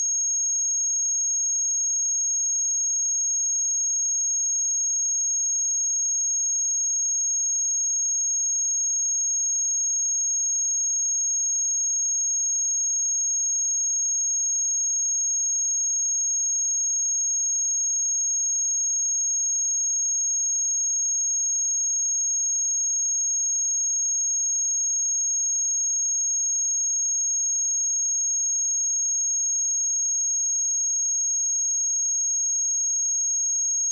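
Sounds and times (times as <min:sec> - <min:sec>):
high-pitched sine test tone: 0:16.2 - 0:33.9.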